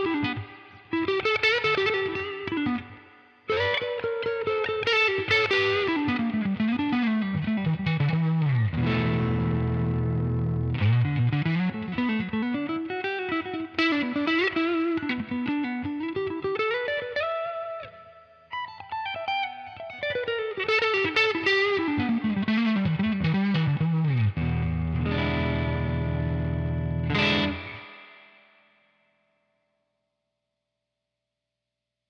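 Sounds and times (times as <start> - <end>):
electric guitar notes: 0.0 - 28.6
electric guitar held chord: 5.1 - 16.2, 18.8 - 28.4.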